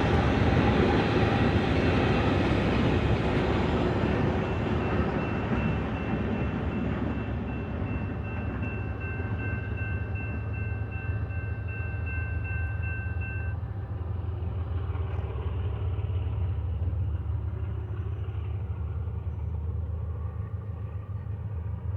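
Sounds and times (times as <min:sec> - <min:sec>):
diesel locomotives rumbling: 0:00.0 - 0:21.9.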